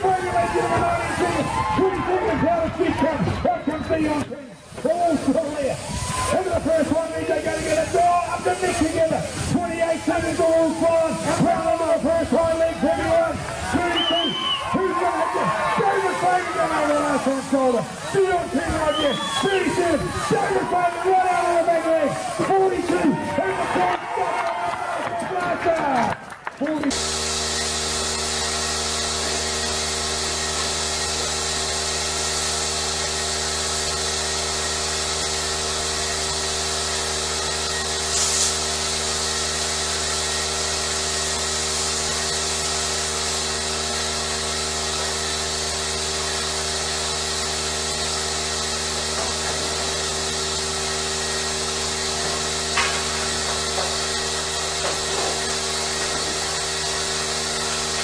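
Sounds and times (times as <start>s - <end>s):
high hiss: 4.5s - 23.2s, 26.9s - 58.0s
machine motor humming: 26.8s - 58.0s.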